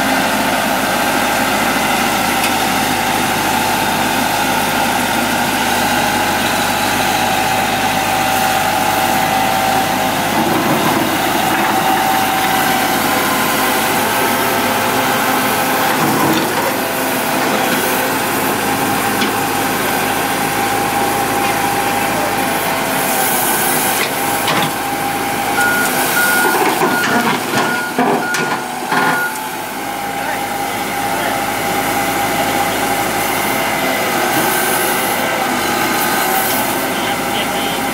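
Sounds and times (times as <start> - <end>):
excavator diesel engine running: 0.0 - 37.9
warning beeper: 25.6 - 29.5.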